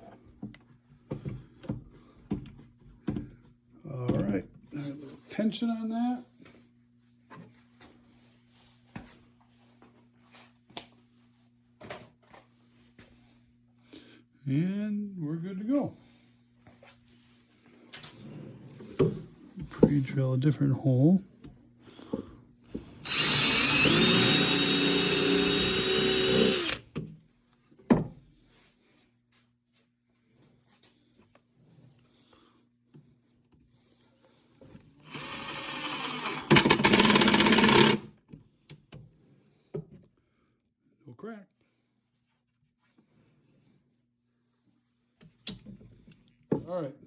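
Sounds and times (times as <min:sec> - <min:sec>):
power drill motor whine: 0:23.0 - 0:26.8, 0:35.0 - 0:38.1
tools and wood clicking: 0:35.8 - 0:38.0.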